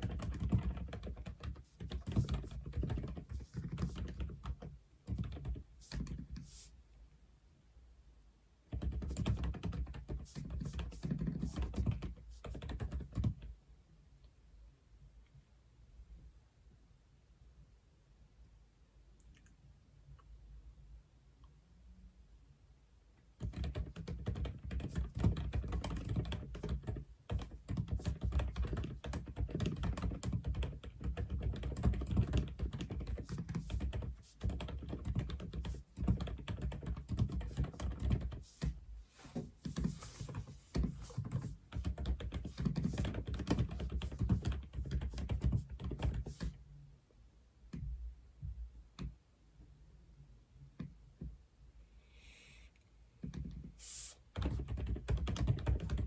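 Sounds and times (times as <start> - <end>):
mechanical keyboard typing: 0.0 - 6.2, 8.7 - 13.4, 23.4 - 38.8, 39.6 - 46.6, 54.4 - 56.0.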